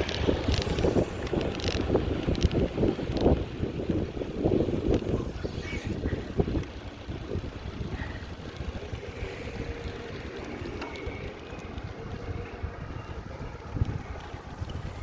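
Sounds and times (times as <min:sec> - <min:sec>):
city street traffic: 0:00.0 - 0:15.0
vehicle engine humming nearby: 0:00.0 - 0:15.0
wind rumble on microphone: 0:00.0 - 0:15.0.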